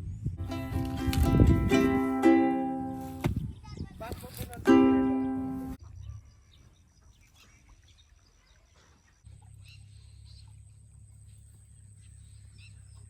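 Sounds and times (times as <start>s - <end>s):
bird chirps: 5.1s - 13.0s.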